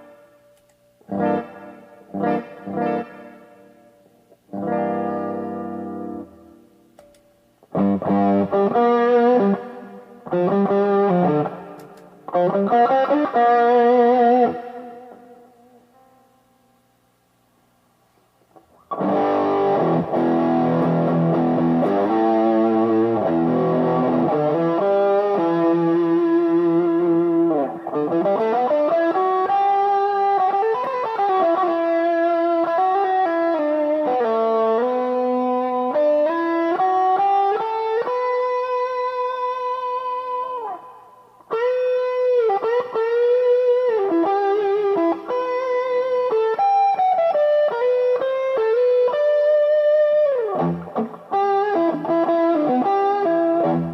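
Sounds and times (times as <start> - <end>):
electric guitar playing: 1.0 - 16.4, 18.5 - 53.9.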